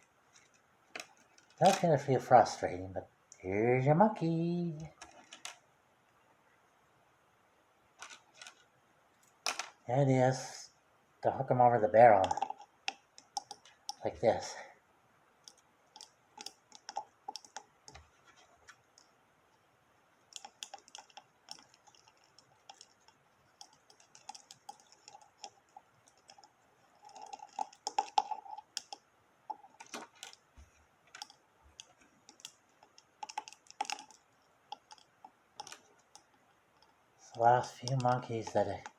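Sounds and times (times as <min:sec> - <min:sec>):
plastic toys clicking together: 0:12.2 - 0:14.1, 0:15.5 - 0:18.0, 0:20.3 - 0:30.4, 0:31.1 - 0:36.4, 0:37.3 - 0:38.9.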